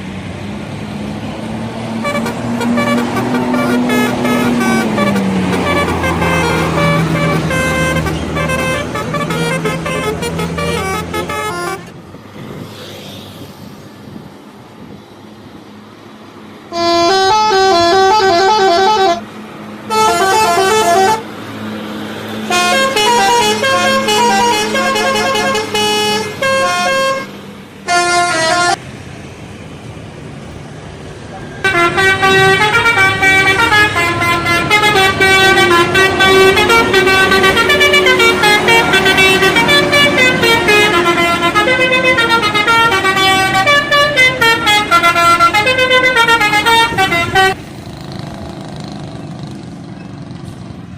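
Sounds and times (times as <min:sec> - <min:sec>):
bus engine hum: 0:00.0 - 0:50.9
bus horn playing melodies: 0:01.9 - 0:12.0, 0:16.7 - 0:21.4, 0:22.4 - 0:28.8, 0:31.6 - 0:47.6.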